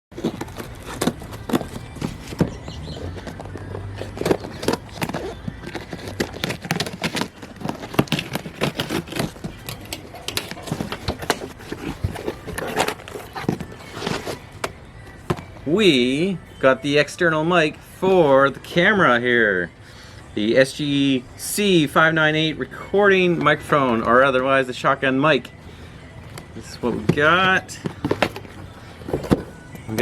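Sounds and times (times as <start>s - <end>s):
cardboard package tearing and rustling: 0.1s - 15.6s.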